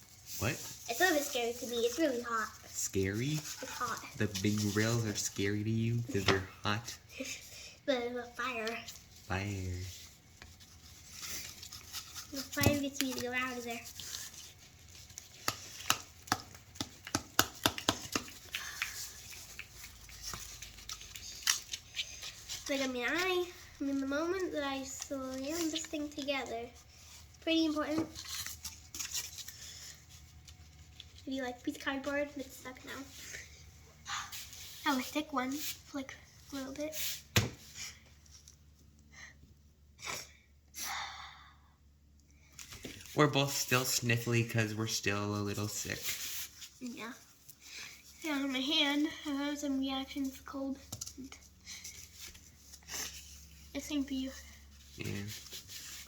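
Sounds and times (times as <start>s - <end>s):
hands handling paper and cardboard: 0.0s - 33.5s.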